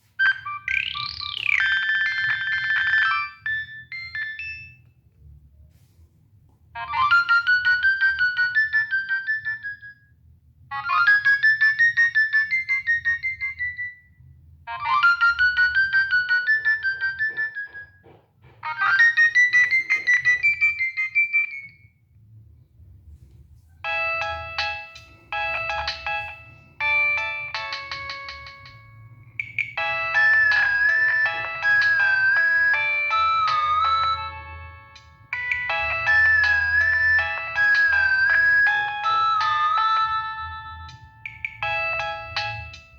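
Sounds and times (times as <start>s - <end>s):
polyphonic phone ringtone: 0.1s - 4.9s, 6.8s - 10.1s, 10.7s - 14.0s, 14.7s - 21.8s, 23.8s - 42.9s.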